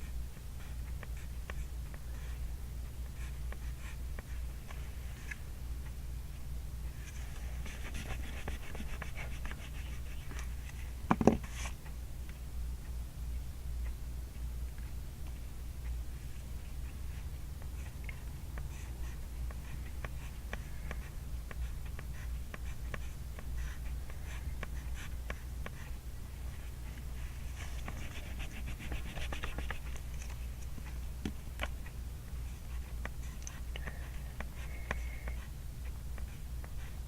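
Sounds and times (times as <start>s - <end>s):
pencil scratching on paper: 7.0s - 10.5s, 26.5s - 30.0s.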